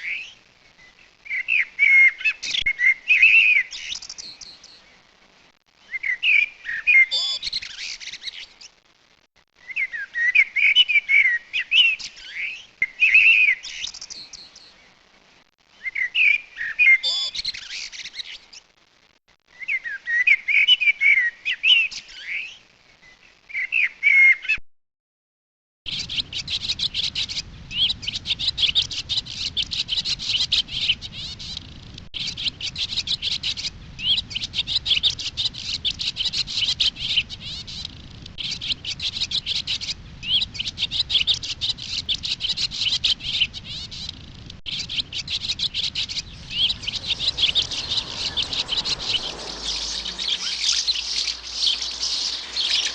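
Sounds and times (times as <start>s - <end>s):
faint background noise: 43.4s - 52.9s
songbird twittering rapidly: 44.7s - 52.9s
whistled bird notes: 44.7s - 52.9s.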